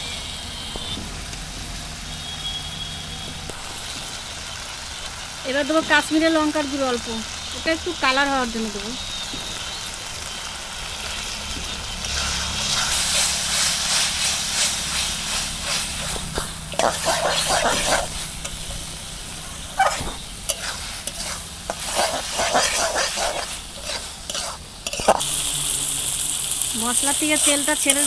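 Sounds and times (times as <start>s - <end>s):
spices sizzling in oil: 0.0s - 28.0s
spatula scraping the pan: 11.9s - 25.3s.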